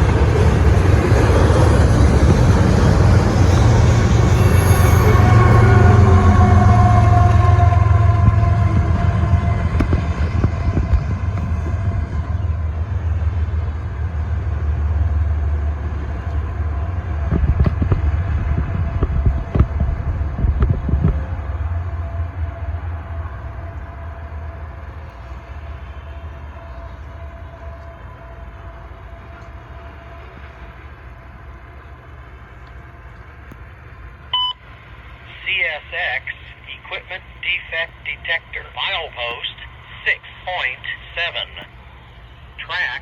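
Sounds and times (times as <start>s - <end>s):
freight train rumbling past: 0.0s - 43.0s
short radio tones: 35.3s - 41.7s.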